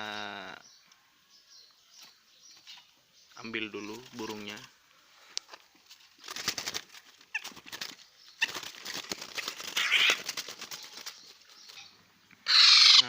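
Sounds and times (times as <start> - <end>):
bird wings fluttering and rustling: 3.8 - 4.8, 5.5 - 12.0
bird squeaks: 9.8 - 10.2, 12.4 - 13.0.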